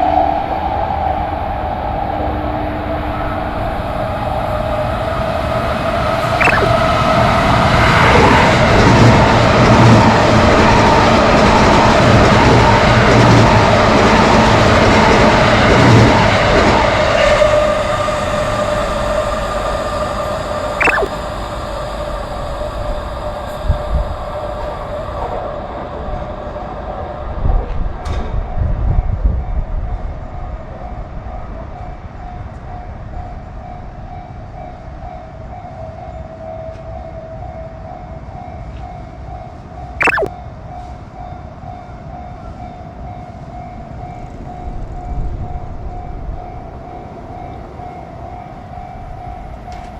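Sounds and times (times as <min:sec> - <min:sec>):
level crossing warning tone: 0:06.4 - 0:06.8, 0:20.8 - 0:22.0, 0:40.0 - 0:40.3
sliding whistle-like tone: 0:06.4 - 0:06.8, 0:20.8 - 0:21.4, 0:40.0 - 0:40.3.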